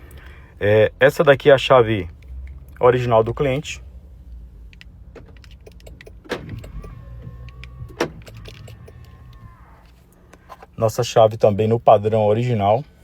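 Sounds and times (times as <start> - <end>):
small electric motor whining: 6.6 - 10.0.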